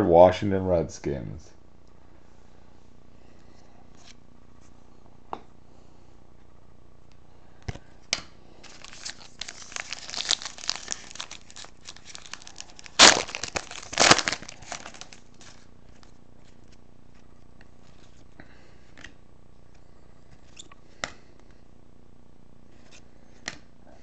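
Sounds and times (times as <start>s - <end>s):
wrapper tearing: 8.6s - 16.1s
card pack wrapper crinkling: 8.6s - 17.2s.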